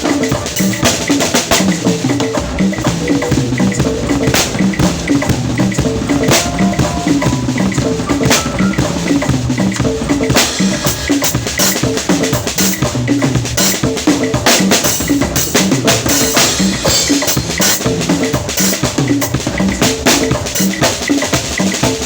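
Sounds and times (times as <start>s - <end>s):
drums and percussion rhythm: 0.0s - 22.0s
short pitched notes repeating: 3.1s - 9.6s.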